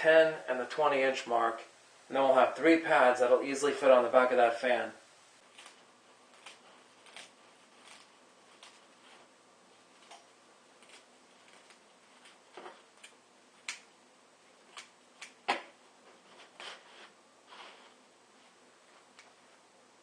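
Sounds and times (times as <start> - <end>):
soft rustles: 15.9 - 19.7.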